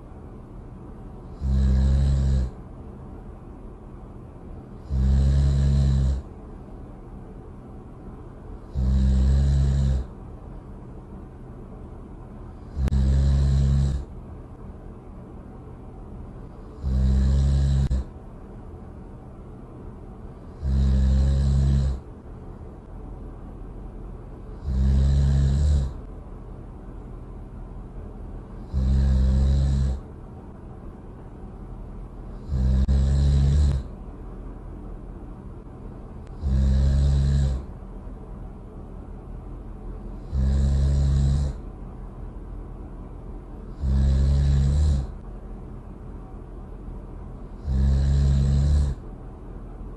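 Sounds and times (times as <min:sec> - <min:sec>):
steady low hum: 0:00.0 - 0:49.9
loud buzzing snoring: 0:01.2 - 0:02.7, 0:04.7 - 0:06.3, 0:08.6 - 0:10.2, 0:12.5 - 0:14.1, 0:16.4 - 0:18.2, 0:20.3 - 0:22.1, 0:24.5 - 0:26.1, 0:28.6 - 0:30.1, 0:32.2 - 0:33.9, 0:36.2 - 0:37.8, 0:40.0 - 0:41.6, 0:43.6 - 0:45.2, 0:47.4 - 0:49.1.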